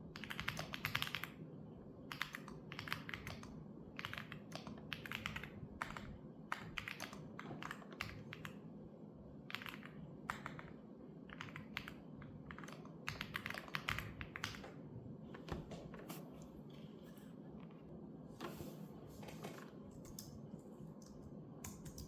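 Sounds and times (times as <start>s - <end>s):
computer keyboard typing: 0.1s - 1.4s, 2.1s - 8.7s, 9.4s - 15.6s, 20.0s - 20.4s, 21.0s - 22.0s.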